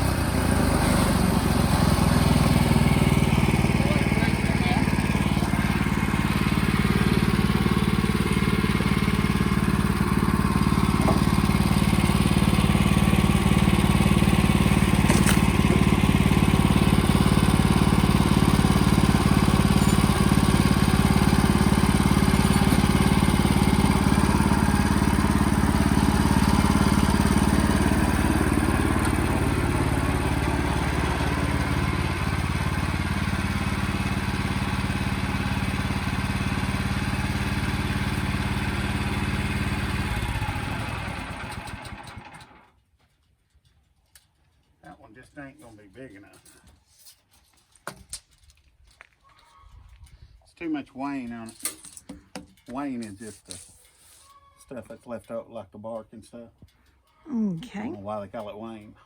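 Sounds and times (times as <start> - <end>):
sawmill engine running: 0.0 - 42.6.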